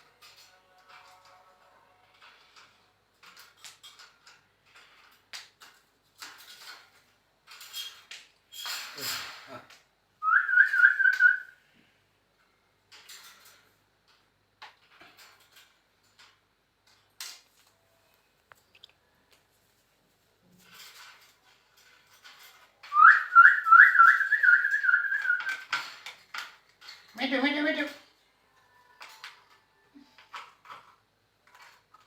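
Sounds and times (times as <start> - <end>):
light clicks and scratches: 0.0 - 9.9, 12.4 - 23.0, 28.9 - 32.0.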